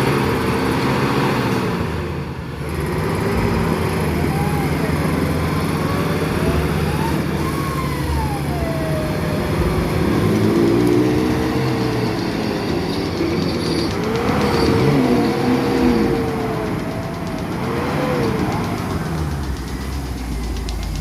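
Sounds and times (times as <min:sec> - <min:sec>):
vehicle engine revving: 0:00.0 - 0:21.0.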